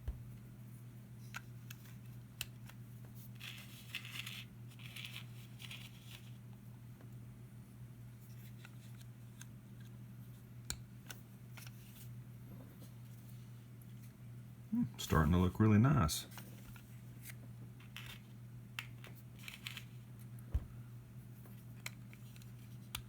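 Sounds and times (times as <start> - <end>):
plastic pieces clicking: 18.8 - 20.0.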